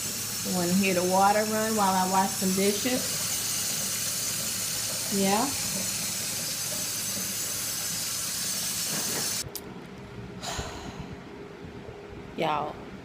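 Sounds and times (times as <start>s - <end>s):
faucet running into sink: 0.0s - 9.4s.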